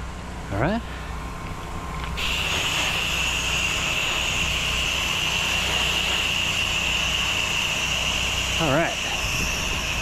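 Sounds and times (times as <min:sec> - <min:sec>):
pressure washer engine running: 0:00.9 - 0:10.0
hissing water jet: 0:02.0 - 0:10.0.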